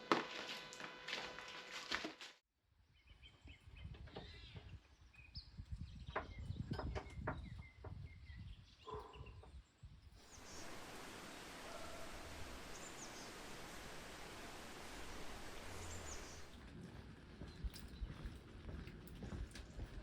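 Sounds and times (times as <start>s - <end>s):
bird chirps: 10.2s - 16.5s
steady even hiss: 10.2s - 16.5s.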